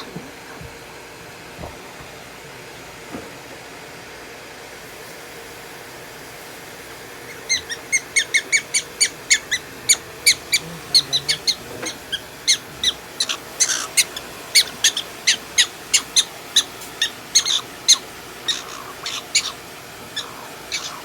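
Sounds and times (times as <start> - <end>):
prairie dog chirping: 7.2 - 21.0.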